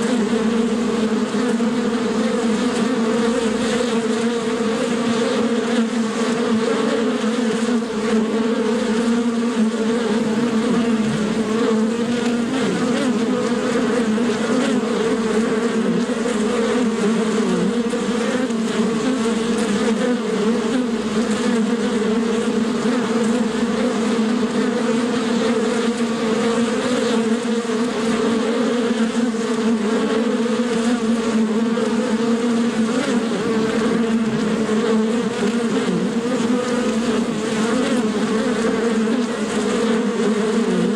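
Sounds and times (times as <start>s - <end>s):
bees buzzing: 0.0s - 40.9s.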